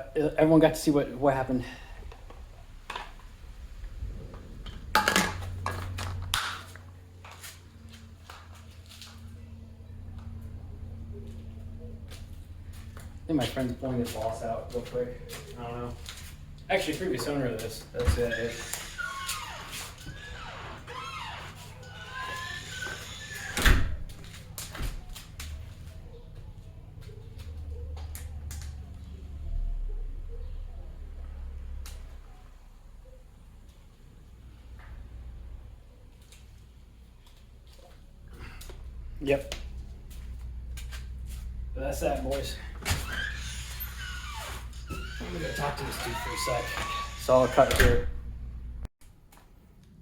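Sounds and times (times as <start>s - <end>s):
low hum: 1.1s - 18.0s.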